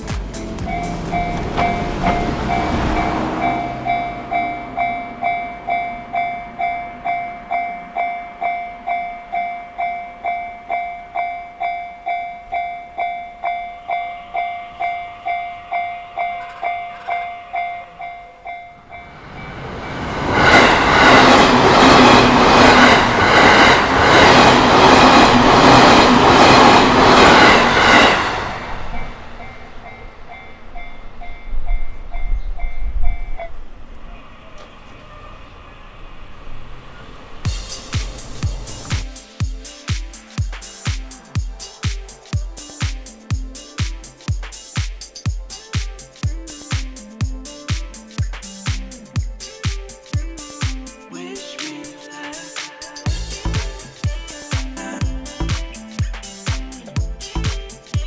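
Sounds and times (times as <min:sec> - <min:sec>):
electric train passing: 0:00.0 - 0:58.0
faint higher crossing bell: 0:00.6 - 0:20.1, 0:28.9 - 0:33.4
level crossing warning bell: 0:00.6 - 0:33.4.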